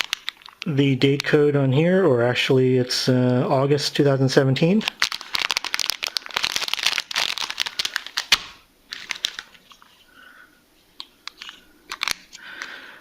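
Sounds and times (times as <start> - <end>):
plastic and foil packets crinkling: 0.0 - 1.2, 4.7 - 10.0, 11.3 - 12.8.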